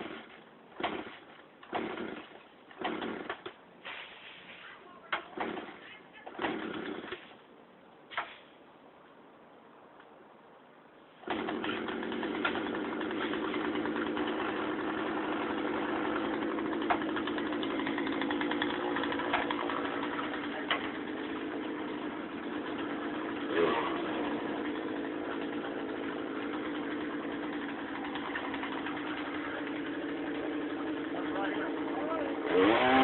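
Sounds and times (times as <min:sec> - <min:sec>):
engine idling: 0:11.2 - 0:33.0.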